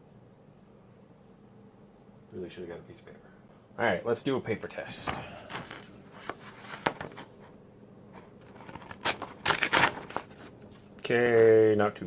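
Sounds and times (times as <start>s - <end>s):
knife blade tearing through sheet: 8.6s - 10.3s.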